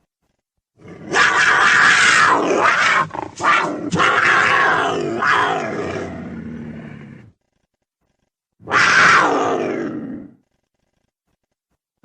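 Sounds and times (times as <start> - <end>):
big cat roaring: 0.8 - 7.4, 8.6 - 10.4.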